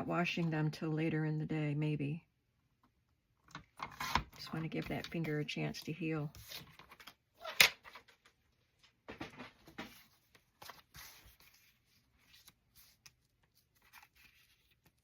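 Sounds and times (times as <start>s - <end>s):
paper rustling: 6.3s - 15.0s.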